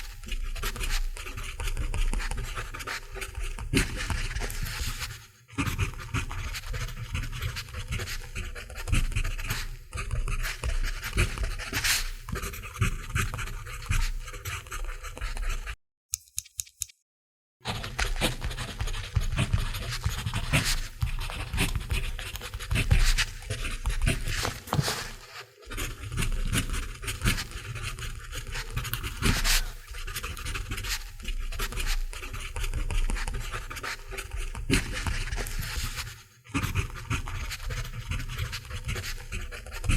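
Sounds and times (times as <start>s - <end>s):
pencil scratching on paper: 0.0s - 15.8s, 17.7s - 39.9s.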